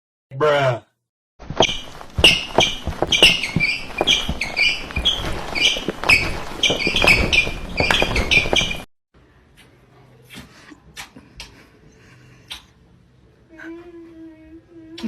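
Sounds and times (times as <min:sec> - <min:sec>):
small bird chirping: 0:01.6 - 0:08.9.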